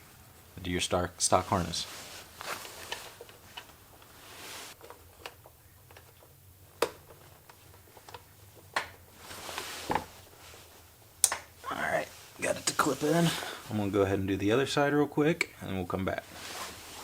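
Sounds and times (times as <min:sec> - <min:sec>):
light rustling: 0:01.4 - 0:13.8.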